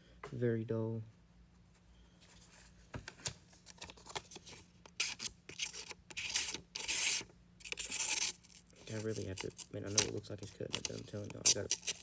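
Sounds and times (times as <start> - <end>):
blade tearing through paper: 3.7 - 12.0.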